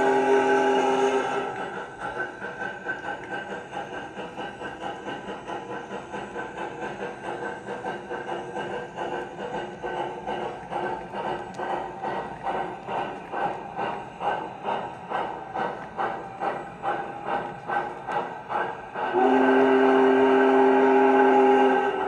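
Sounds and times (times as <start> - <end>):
chime steam whistle: 0.0 - 1.6, 19.0 - 22.0
model steam locomotive chuffing: 0.0 - 22.0.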